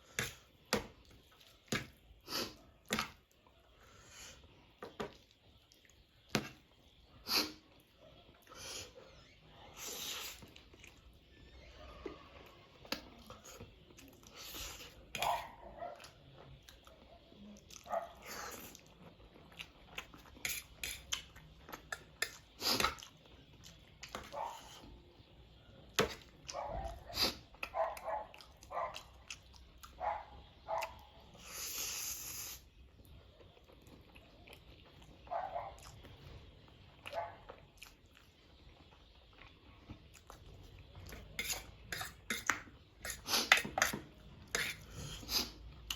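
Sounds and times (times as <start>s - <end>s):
wet chewing and smacking: 10.2s - 11.2s, 17.6s - 24.9s, 25.9s - 31.1s, 33.0s - 36.2s, 36.8s - 45.9s
slurping noodles: 31.4s - 32.7s, 44.5s - 45.7s.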